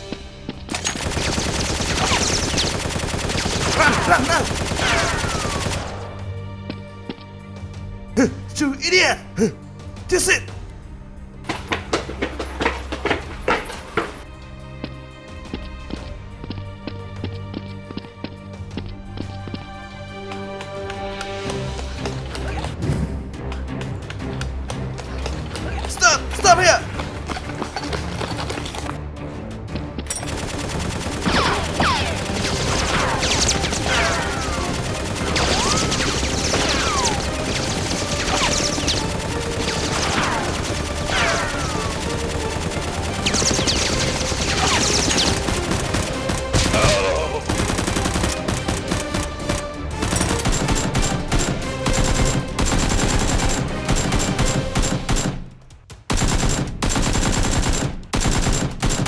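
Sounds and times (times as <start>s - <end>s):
automatic gunfire sound effects: 0.8s - 6.1s, 30.2s - 59.0s.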